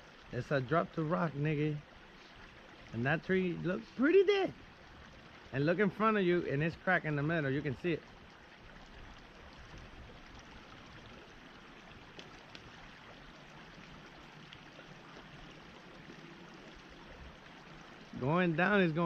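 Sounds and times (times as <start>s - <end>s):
small ticks: 9.7s - 17.9s.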